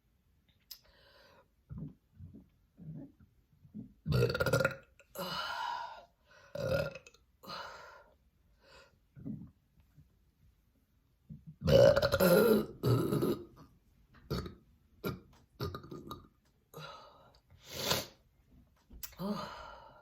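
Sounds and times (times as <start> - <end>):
person burping: 3.8 - 5.5, 6.6 - 7.5, 11.6 - 13.7, 14.3 - 16.4.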